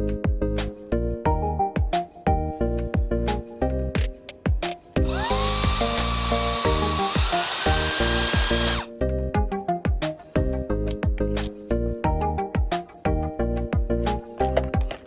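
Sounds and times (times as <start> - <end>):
background music: 0.0 - 15.0
handheld vacuum motor whine: 5.0 - 8.9.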